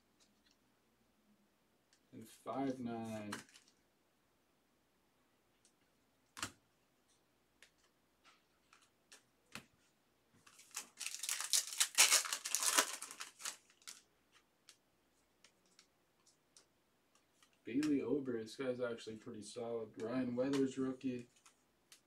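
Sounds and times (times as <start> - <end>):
foil pack tearing open: 10.6 - 14.0.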